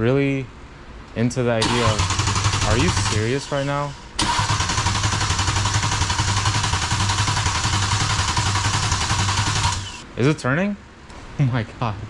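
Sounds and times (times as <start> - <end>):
engine cranking by starter motor: 1.6 - 10.0.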